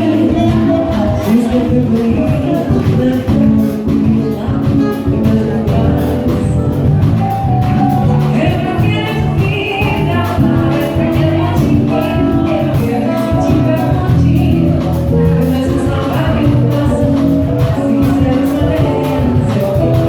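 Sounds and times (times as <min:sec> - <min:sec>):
live band music: 0:00.0 - 0:20.0
person singing: 0:00.0 - 0:20.0.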